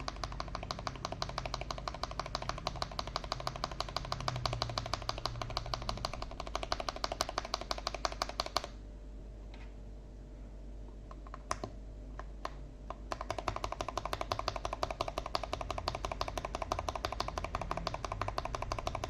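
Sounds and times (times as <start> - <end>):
mechanical keyboard typing: 0.0 - 8.8, 12.9 - 19.0.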